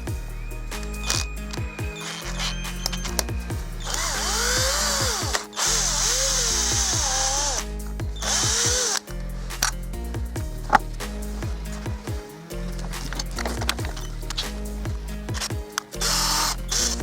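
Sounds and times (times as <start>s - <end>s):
background music: 0.0s - 17.0s
power drill running: 1.0s - 7.6s.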